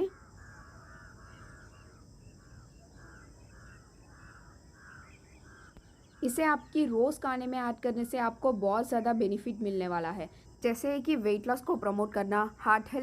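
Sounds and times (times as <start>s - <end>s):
faint crow cawing: 0.0s - 6.8s.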